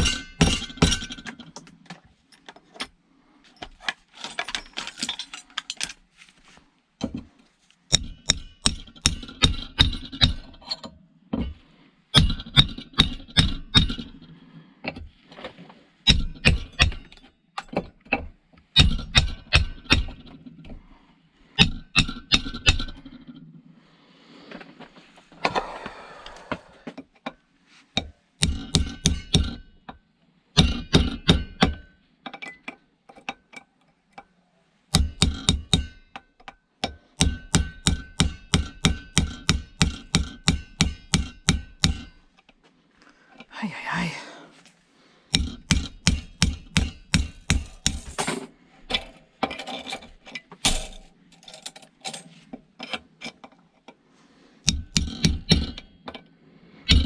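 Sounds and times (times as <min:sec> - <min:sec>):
scraping rattle: 0:47.4 - 0:53.6.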